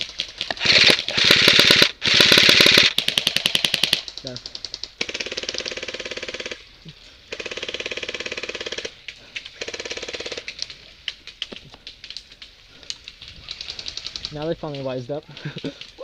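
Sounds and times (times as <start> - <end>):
airsoft gun rapid shots: 0.0 - 6.6, 7.3 - 8.9.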